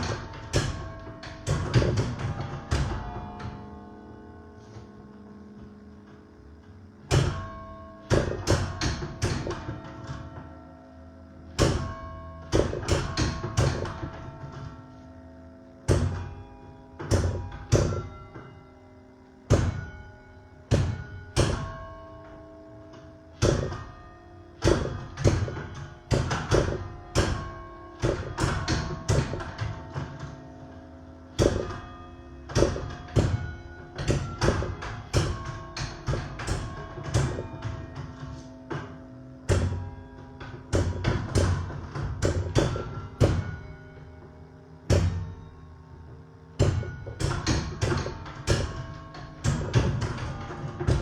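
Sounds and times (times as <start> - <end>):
church bells playing carol melody: 7.5 - 10.7, 19.8 - 44.8.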